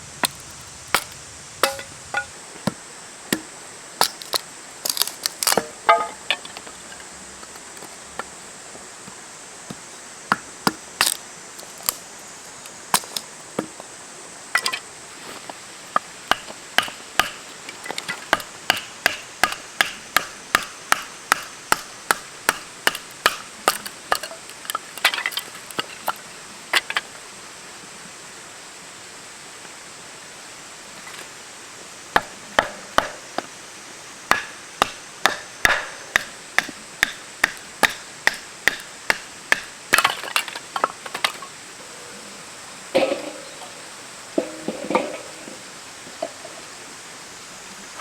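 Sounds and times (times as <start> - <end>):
sharp blows on wood: 18.3 - 23.8, 34.3 - 39.7.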